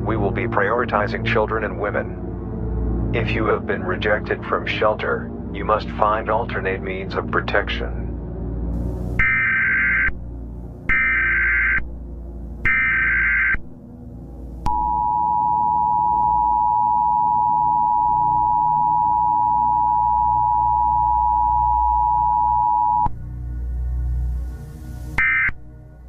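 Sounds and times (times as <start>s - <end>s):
low background drone: 0.0s - 26.0s
screeching digital header bursts: 9.2s - 10.1s, 10.9s - 11.8s, 12.7s - 13.6s
two-tone attention signal: 14.7s - 23.1s.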